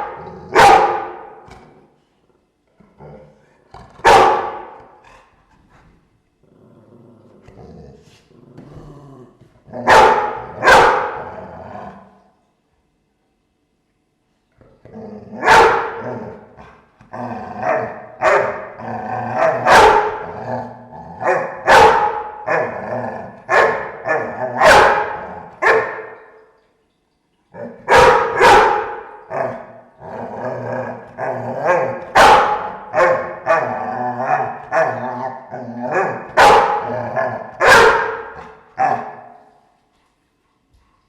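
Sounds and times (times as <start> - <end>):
dogs barking: 0.0 - 1.5, 4.0 - 4.9, 9.8 - 11.3, 15.4 - 16.2, 17.6 - 20.3, 21.2 - 22.8, 23.5 - 26.3, 27.8 - 29.7, 31.6 - 35.3, 35.9 - 39.4
dogs growling: 2.8 - 4.1, 4.7 - 12.2, 14.6 - 21.7, 22.4 - 25.6, 29.3 - 37.6.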